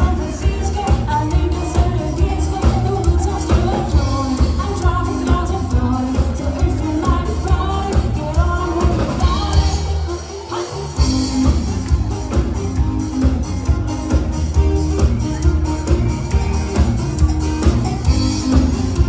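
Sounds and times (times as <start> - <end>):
person singing: 0.0 - 12.0
drum and bass beat: 0.0 - 19.0.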